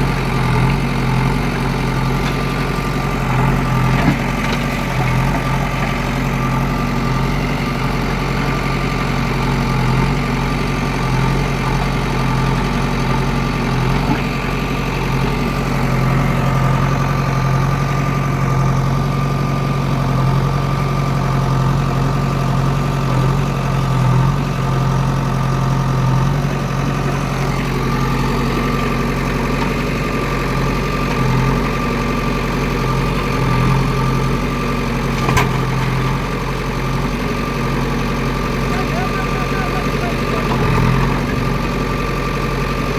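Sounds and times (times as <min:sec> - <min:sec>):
diesel engine running: 0:00.0 - 0:42.9.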